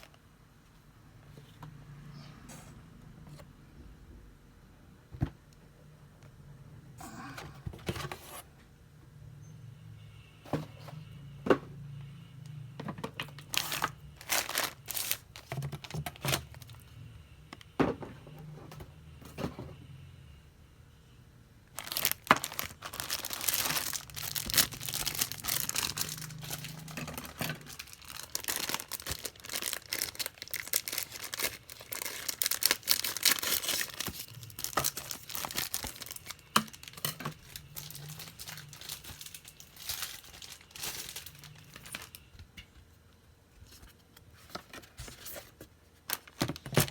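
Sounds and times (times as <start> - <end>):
plastic wrapping crinkling and tearing: 13.2 - 16.8, 21.8 - 42.2, 46.1 - 46.9.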